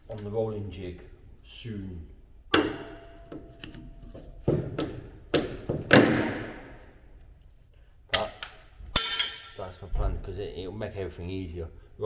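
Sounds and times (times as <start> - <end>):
objects knocking and clunking: 2.5 - 7.0.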